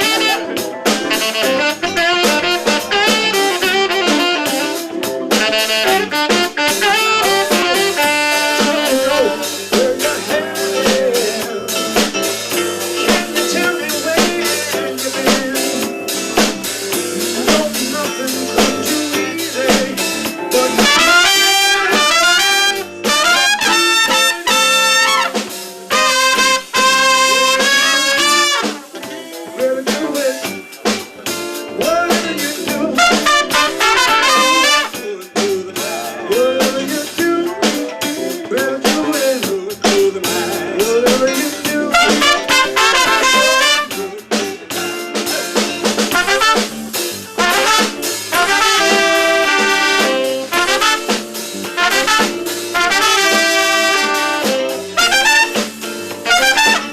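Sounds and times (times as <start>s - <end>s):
horns playing melody: 0.0s - 11.4s, 17.5s - 29.0s, 32.9s - 35.0s, 41.8s - 44.2s, 46.1s - 56.9s
drum kit: 0.0s - 56.9s.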